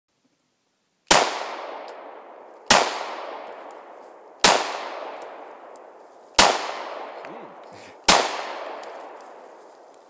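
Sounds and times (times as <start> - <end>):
pistol shots with echo: 1.1 - 3.6, 4.4 - 5.7, 6.4 - 7.2, 8.0 - 9.2.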